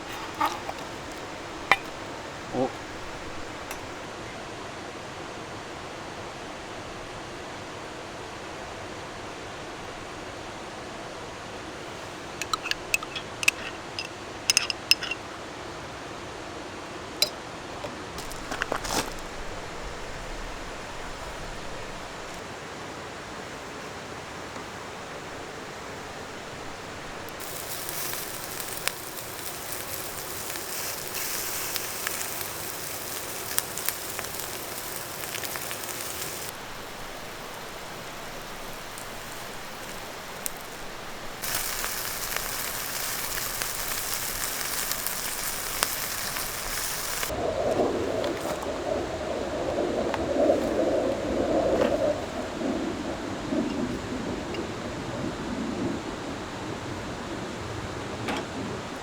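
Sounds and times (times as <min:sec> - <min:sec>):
crackly hiss: 0:00.0 - 0:04.4, 0:11.8 - 0:15.2, 0:17.8 - 0:59.0
stream rushing: 0:17.9 - 0:47.4.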